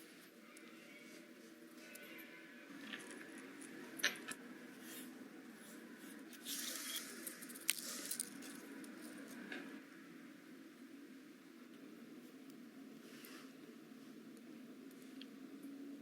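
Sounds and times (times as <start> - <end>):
rustling scrape of tiny parts: 1.8 - 9.5
small parts clicking: 6.3 - 9.4.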